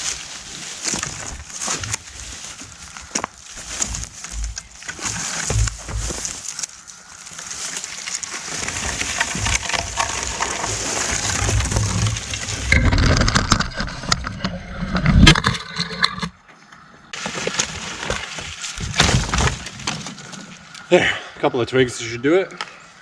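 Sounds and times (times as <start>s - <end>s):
footsteps in dry leaves: 0.0s - 13.3s, 17.2s - 20.9s
twigs crunching and cracking: 0.0s - 16.3s, 17.1s - 21.0s.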